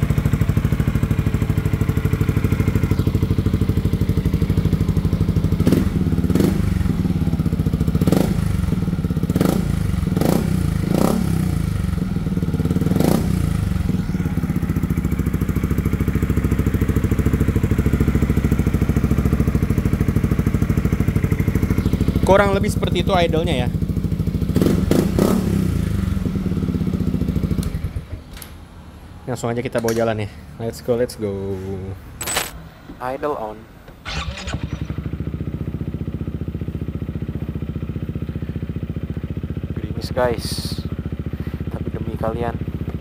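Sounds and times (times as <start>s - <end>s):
scooter engine idling: 0.0s - 29.1s, 34.0s - 43.0s
short sharp engine bursts: 34.0s - 35.4s.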